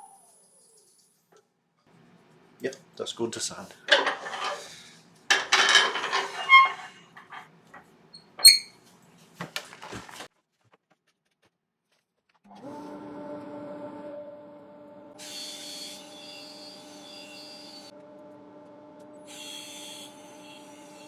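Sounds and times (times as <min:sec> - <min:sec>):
clattering and rustling: 0:03.7 - 0:08.7, 0:09.4 - 0:10.3.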